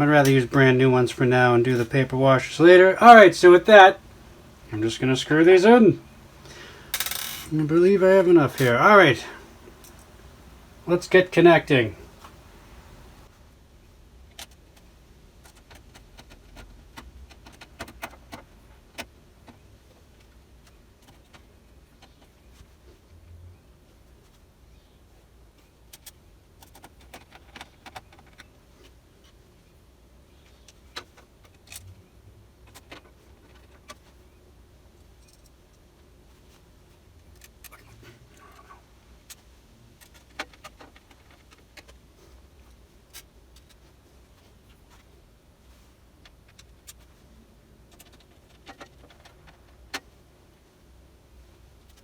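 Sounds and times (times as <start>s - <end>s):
hands clicking and tapping parts: 0.0s - 13.2s
low room hum: 0.0s - 13.3s.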